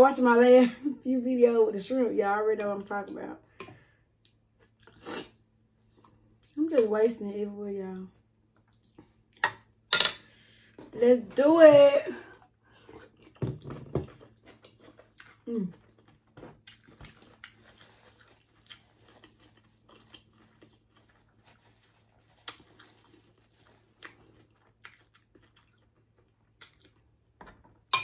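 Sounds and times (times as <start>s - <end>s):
person chewing food: 4.2s - 5.1s, 5.7s - 6.6s, 8.4s - 9.4s, 12.3s - 13.4s, 14.0s - 27.4s.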